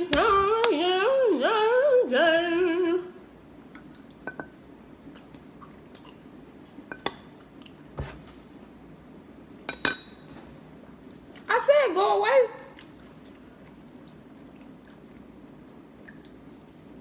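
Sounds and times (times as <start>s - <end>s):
tableware clicking and clinking: 3.8s - 4.6s, 6.9s - 7.3s, 9.7s - 10.4s.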